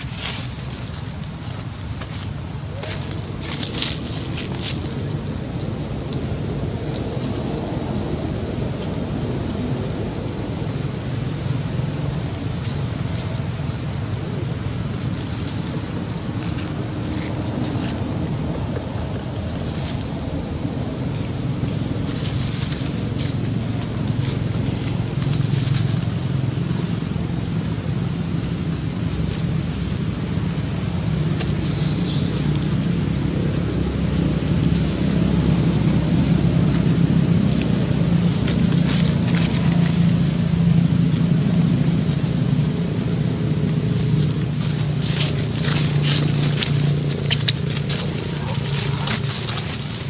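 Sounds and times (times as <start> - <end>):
faint crackles and rustles: 0.0 - 50.0
low engine-like hum: 0.0 - 50.0
steady low rumble: 0.0 - 50.0
wash of noise: 0.0 - 50.0.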